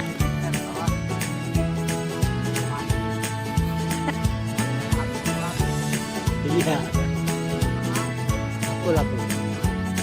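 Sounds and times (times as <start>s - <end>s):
background music with steady beat: 0.0s - 10.0s
guitar: 0.0s - 10.0s.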